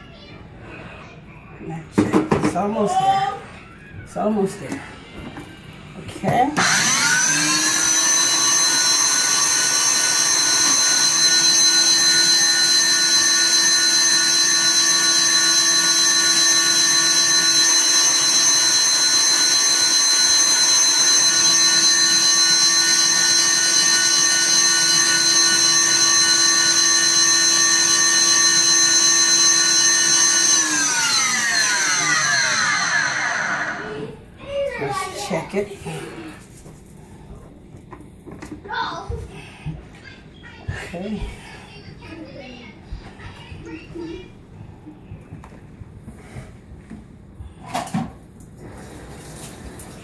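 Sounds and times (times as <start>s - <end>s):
electric blender running: 6.6s - 34.1s.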